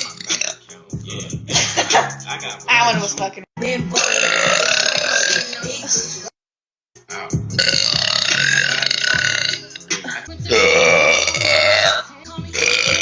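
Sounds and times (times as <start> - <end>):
woman belching: 3.8 - 5.7, 7.6 - 13.0.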